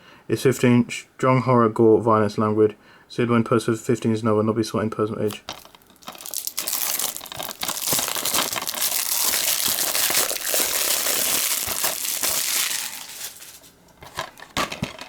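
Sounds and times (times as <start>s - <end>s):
plastic shrink-wrap crinkling: 5.3s - 15.0s.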